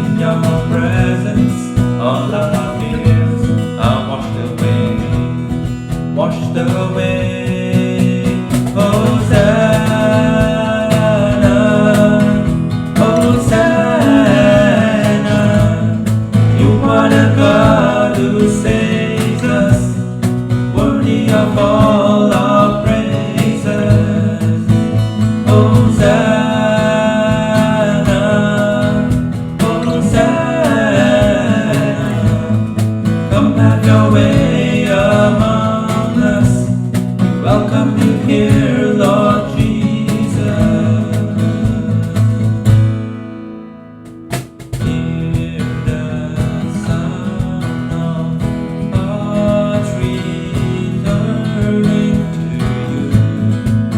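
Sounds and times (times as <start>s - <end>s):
person singing: 0.0s - 42.8s, 44.8s - 53.5s
worship band with acoustic guitar: 0.0s - 53.9s.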